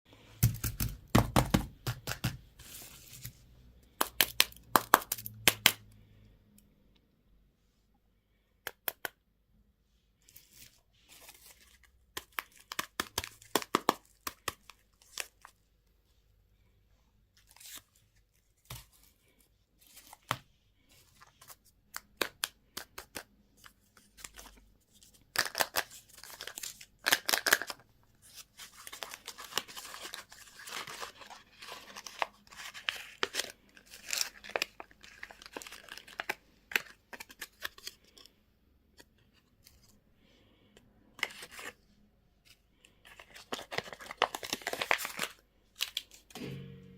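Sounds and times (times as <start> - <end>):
packaging tearing and crinkling: 25.3 - 27.8, 28.6 - 38.0, 43.1 - 46.3.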